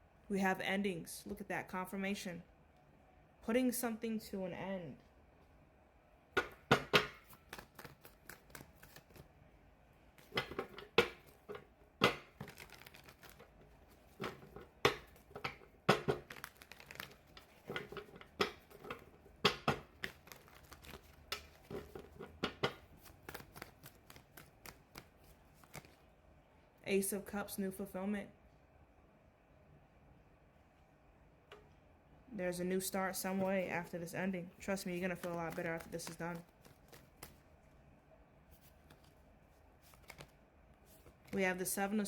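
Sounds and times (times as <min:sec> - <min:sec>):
cards being shuffled: 0:07.1 - 0:09.3, 0:10.2 - 0:26.0, 0:34.6 - 0:37.5, 0:38.5 - 0:41.4.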